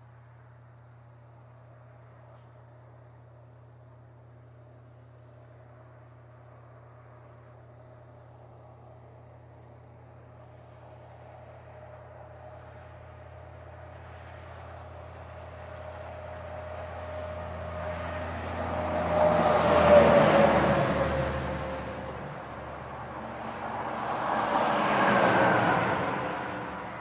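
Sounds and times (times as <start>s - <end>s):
heavy trucks passing: 16.3s - 27.0s.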